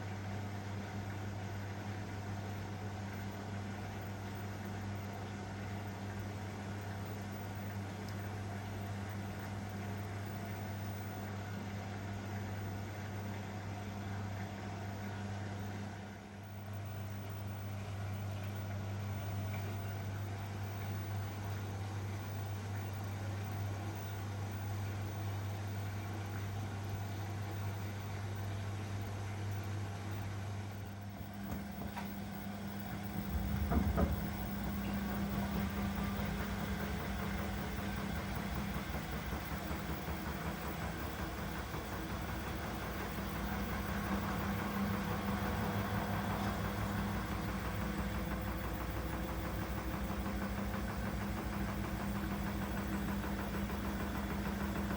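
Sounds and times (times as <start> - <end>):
washing machine humming: 0.0 - 54.9
brief knock: 33.1 - 34.5.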